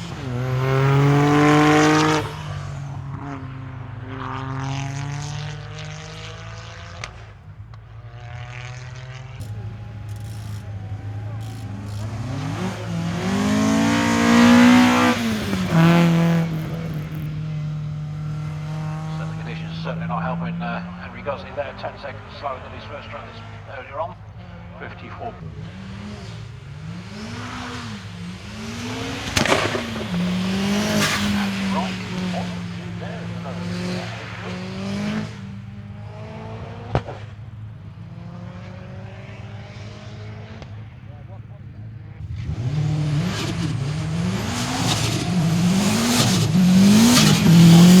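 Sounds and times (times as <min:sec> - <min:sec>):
race car accelerating hard: 0:00.0 - 0:48.0
sharp crack: 0:29.1 - 0:31.4.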